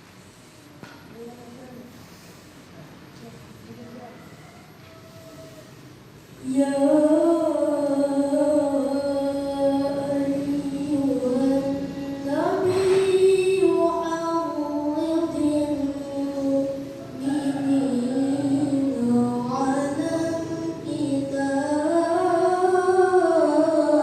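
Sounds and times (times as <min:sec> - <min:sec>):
child reciting melodically: 0:06.3 - 0:24.0.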